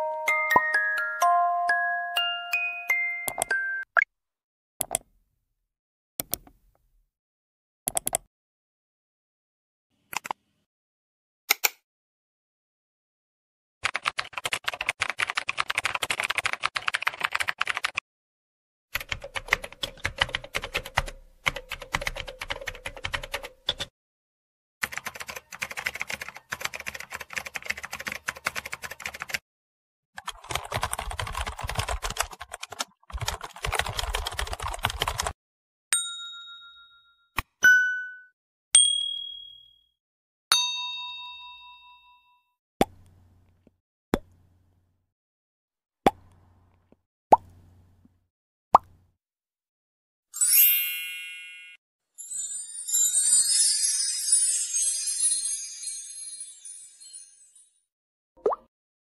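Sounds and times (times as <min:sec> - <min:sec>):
rapid keyboard typing: 0:13.8 - 0:18.0, 0:19.0 - 0:23.9, 0:24.8 - 0:29.4, 0:30.2 - 0:35.4
bright dings: 0:36.0 - 0:42.5, 0:50.4 - 0:57.7.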